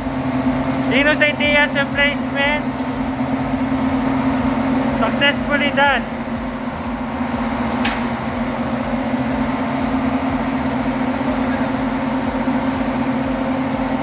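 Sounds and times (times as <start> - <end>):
generator engine humming: 0.0 - 14.0
sharp click: 7.8 - 8.1.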